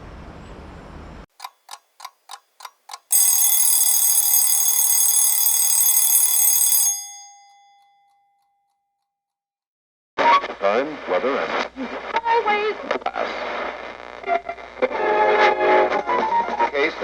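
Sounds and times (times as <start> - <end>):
alarm clock ticking: 1.4 - 8.2
alarm clock bell ringing: 3.1 - 8.2.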